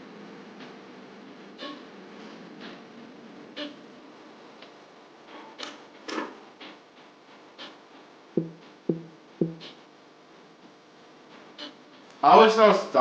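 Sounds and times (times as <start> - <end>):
low plucked notes: 8.4 - 9.7.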